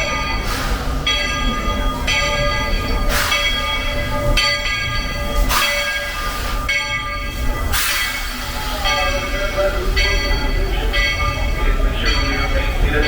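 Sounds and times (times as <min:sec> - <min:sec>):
locomotive bell ringing: 0:00.0 - 0:13.0
steam hiss bursts: 0:00.4 - 0:01.1, 0:02.9 - 0:03.9, 0:05.4 - 0:06.7, 0:07.3 - 0:10.0.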